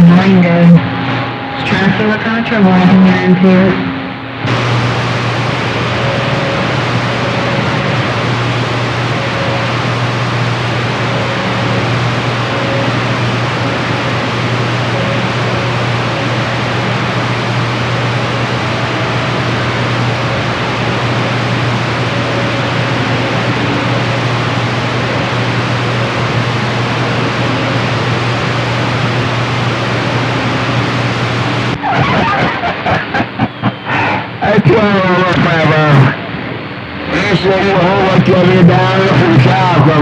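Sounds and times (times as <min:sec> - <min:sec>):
voice on radio: 0:00.0 - 0:00.8, 0:01.6 - 0:03.9, 0:31.8 - 0:36.2, 0:37.1 - 0:40.0
low steady hum: 0:00.0 - 0:40.0
radio static hiss: 0:00.0 - 0:40.0.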